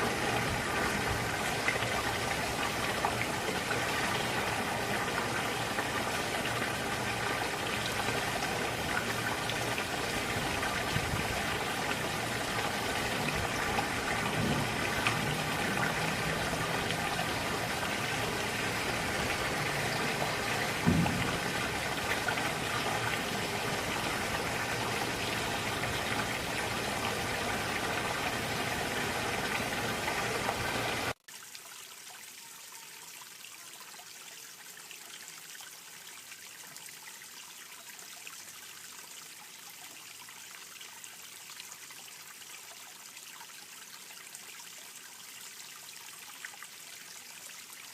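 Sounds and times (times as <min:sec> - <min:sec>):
water running over rocks: 0:00.0 - 0:47.9
low knock: 0:20.7 - 0:22.5.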